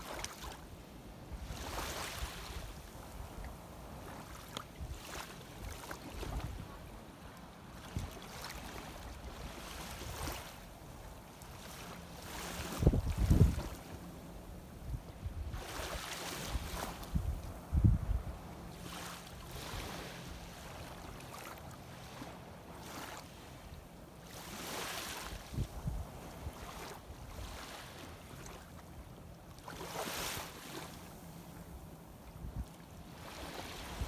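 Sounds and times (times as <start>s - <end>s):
shallow seawater washing: 1.3s - 14.8s, 15.4s - 17.2s, 18.4s - 29.0s, 29.6s - 31.4s, 32.6s - 34.0s
wind on microphone: 5.6s - 6.9s, 12.4s - 13.9s, 14.8s - 18.5s, 25.4s - 26.7s, 32.4s - 34.0s.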